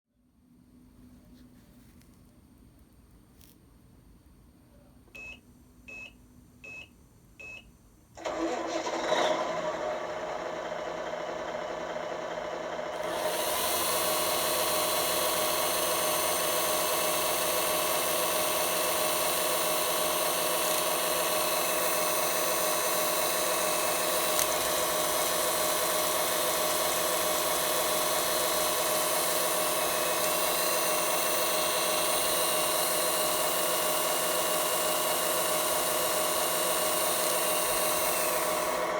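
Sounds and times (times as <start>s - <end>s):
rc truck motor running: 8.2s - 38.9s.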